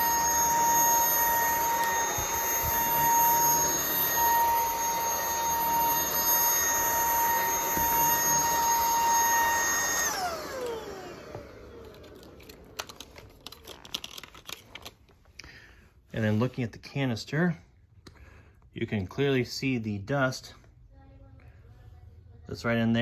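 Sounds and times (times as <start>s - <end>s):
stick vacuum whining: 0.0s - 15.6s.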